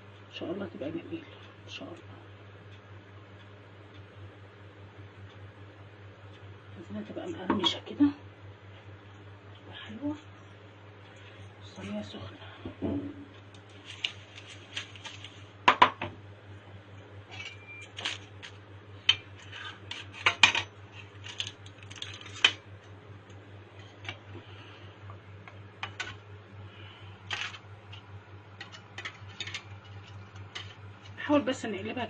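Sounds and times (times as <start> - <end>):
steady low hum: 0.0 - 32.0
metal utensils clinking on baking tray: 28.6 - 30.8.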